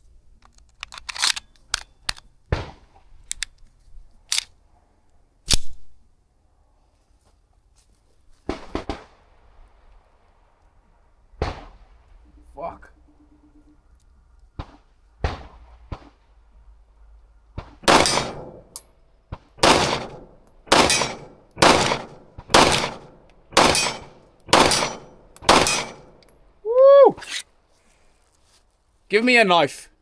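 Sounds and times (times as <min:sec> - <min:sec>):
pistol handling clicks: 0:00.4 - 0:02.3, 0:03.2 - 0:03.7, 0:04.3 - 0:04.6, 0:05.5 - 0:05.8
pistol shots with echo: 0:17.8 - 0:18.8, 0:19.6 - 0:26.2.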